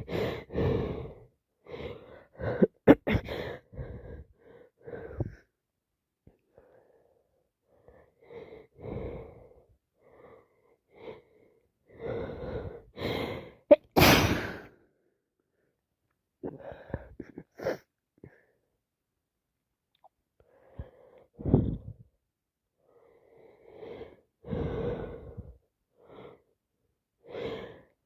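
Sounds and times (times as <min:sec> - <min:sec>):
person sneezing: 0:13.7 - 0:14.7.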